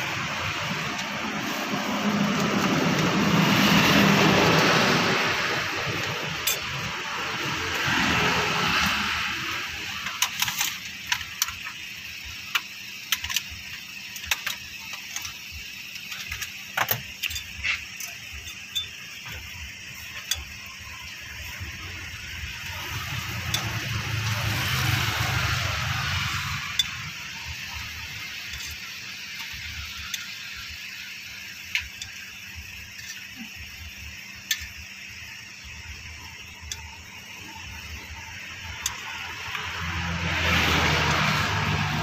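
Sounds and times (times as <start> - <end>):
motor vehicle passing: 0.0 - 6.4, 7.0 - 10.0, 22.8 - 27.8, 39.0 - 42.0.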